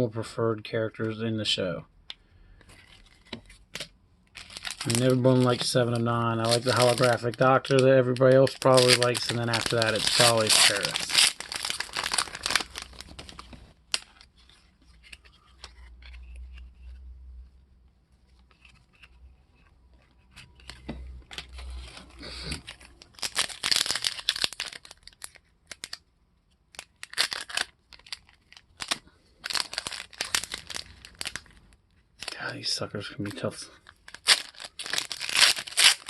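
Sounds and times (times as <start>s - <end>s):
card wrapper tearing and crinkling: 2.7s - 17.1s, 18.4s - 26.0s, 26.7s - 36.0s
wrapper rustling: 2.8s - 16.6s, 20.2s - 26.0s, 26.7s - 32.5s, 33.2s - 36.0s.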